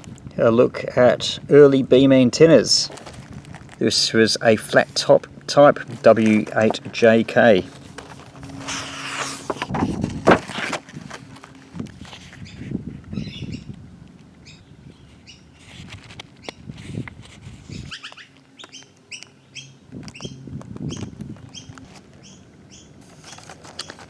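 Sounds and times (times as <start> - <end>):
rustling and handling noise: 2.6 - 12.5, 15.5 - 18.8, 23.0 - 24.0
bird calling: 17.7 - 23.0.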